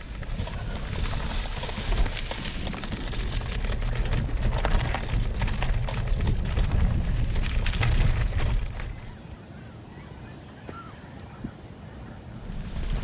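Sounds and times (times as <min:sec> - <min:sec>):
bicycle tyres rumbling: 0:00.0 - 0:09.2, 0:12.3 - 0:13.0
bicycle frame clicks and rattles: 0:01.0 - 0:09.1.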